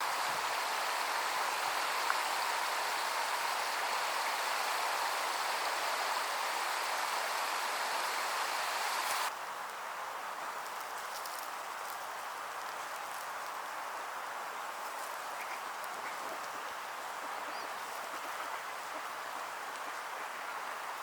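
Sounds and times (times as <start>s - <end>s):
running water: 0.0s - 9.3s.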